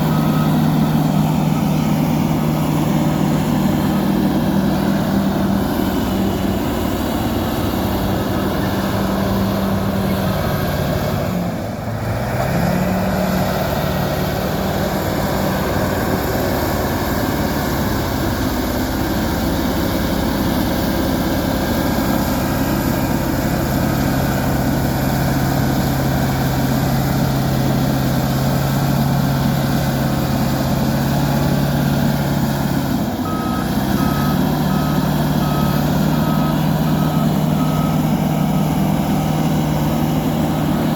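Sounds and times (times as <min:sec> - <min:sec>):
reverse alarm beeping: 0:00.0 - 0:02.4, 0:33.2 - 0:39.2
bulldozer diesel engine running: 0:00.0 - 0:40.9.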